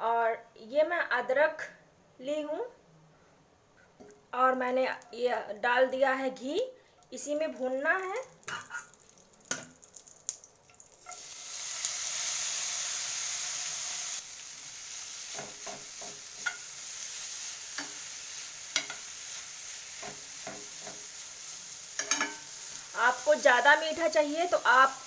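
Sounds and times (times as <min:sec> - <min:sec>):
ginger sizzling in a pan: 0:08.1 - 0:25.0.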